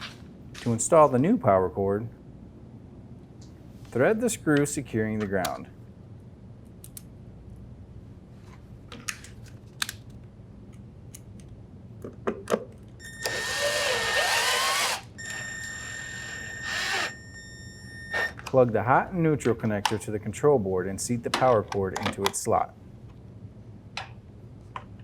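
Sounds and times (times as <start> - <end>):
cordless drill driving screw: 13.0 - 18.3.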